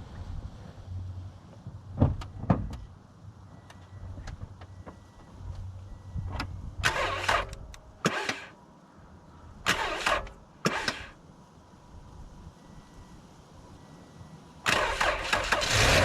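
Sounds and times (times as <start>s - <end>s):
car starter cranking: 6.8s - 8.6s, 9.7s - 11.2s, 14.7s - 16.0s.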